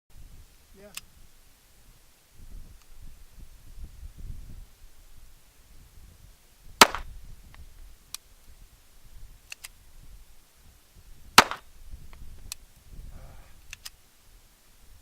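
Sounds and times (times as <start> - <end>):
revolver shots: 6.8 - 7.1, 11.4 - 11.7.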